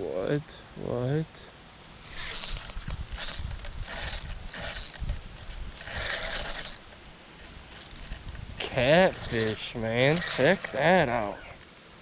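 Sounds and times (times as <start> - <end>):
fishing reel gears ratcheting: 2.1 - 11.7.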